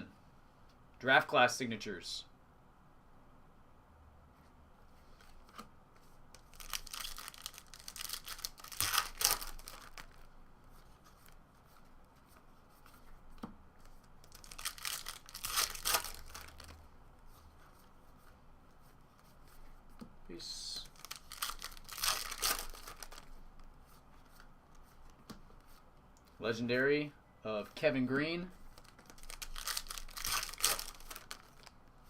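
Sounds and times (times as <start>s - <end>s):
wrappers tearing and crinkling: 6.4s - 10.3s, 14.2s - 16.8s, 20.8s - 23.3s, 28.7s - 31.8s.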